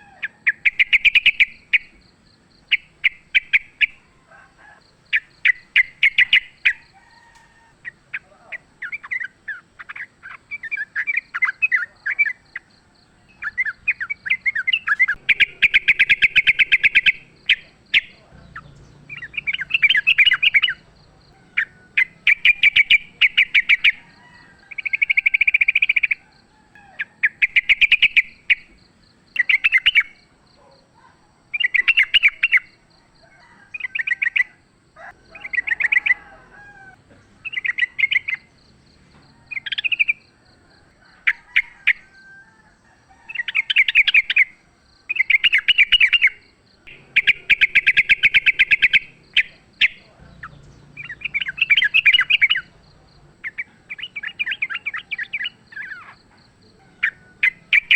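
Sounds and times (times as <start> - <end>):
bird chattering calls: 0.0 - 2.0, 2.7 - 4.1, 5.1 - 32.7, 33.8 - 38.5, 39.4 - 40.2, 43.3 - 44.5, 45.1 - 57.9.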